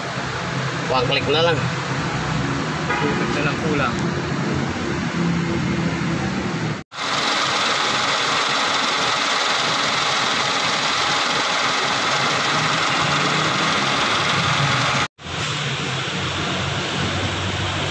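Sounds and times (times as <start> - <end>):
car engine idling: 6.9 - 15.1.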